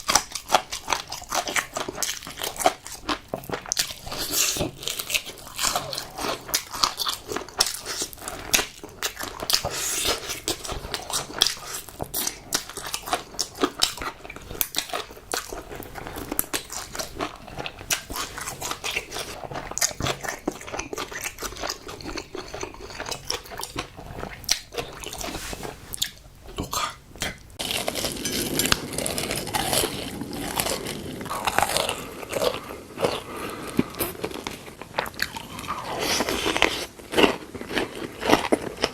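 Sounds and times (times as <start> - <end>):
chewing crunchy food: 0.0 - 38.9.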